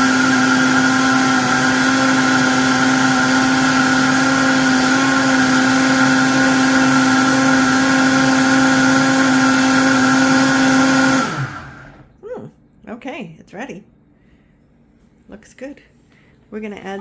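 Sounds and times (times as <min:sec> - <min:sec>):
blender motor running: 0:00.0 - 0:12.1.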